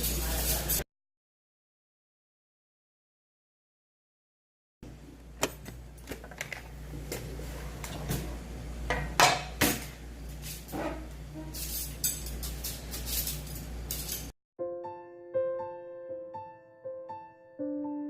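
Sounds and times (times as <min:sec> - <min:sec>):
utensils clinking on bowls: 0:00.0 - 0:00.8, 0:10.3 - 0:14.3.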